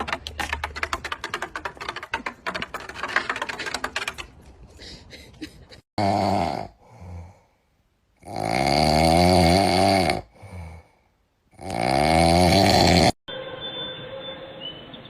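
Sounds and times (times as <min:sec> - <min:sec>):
pet snoring: 0:11.6 - 0:13.2.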